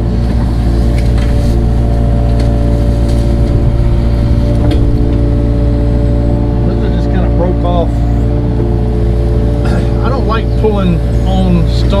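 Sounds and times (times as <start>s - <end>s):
earthmoving machine engine running: 0.0s - 12.0s.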